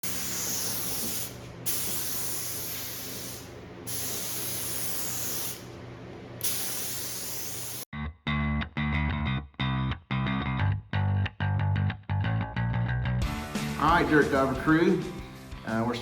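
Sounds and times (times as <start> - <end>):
paint spray gun hissing: 0.0 - 5.7, 6.4 - 7.9.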